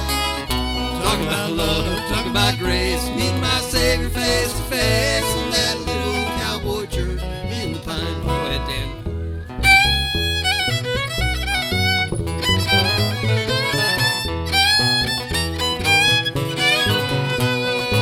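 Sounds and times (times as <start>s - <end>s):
bass and rhythm backing: 0.0s - 18.0s
fiddle solo: 0.0s - 18.0s.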